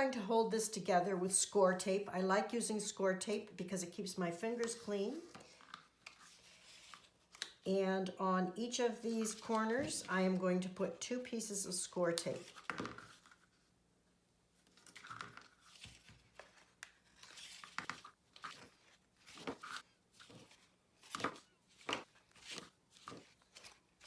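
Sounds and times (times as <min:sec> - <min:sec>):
card crinkling: 0:14.6 - 0:24.0.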